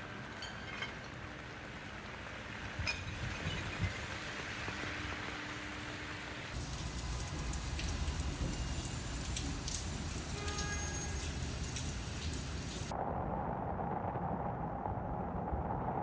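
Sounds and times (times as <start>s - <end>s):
heavy rain falling: 6.6s - 12.9s.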